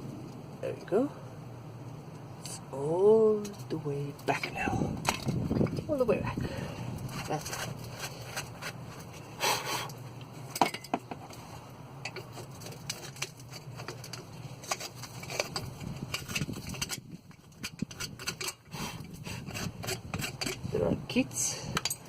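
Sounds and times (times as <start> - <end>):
steady low hum: 0.0 - 22.0
tools clicking and knocking: 12.0 - 18.6, 19.5 - 20.7, 21.7 - 22.0.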